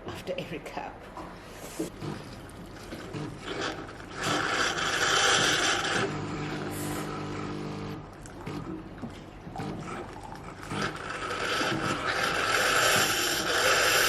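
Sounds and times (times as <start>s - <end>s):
pump humming: 1.8s - 14.0s
coffee machine hissing: 3.1s - 8.0s, 10.2s - 14.0s.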